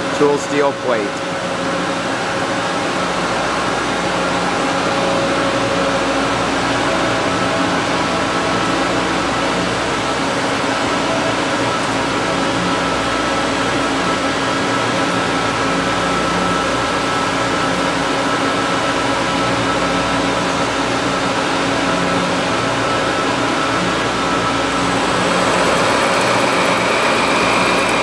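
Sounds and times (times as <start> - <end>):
milling machine cutting steel: 24.8 - 28.0.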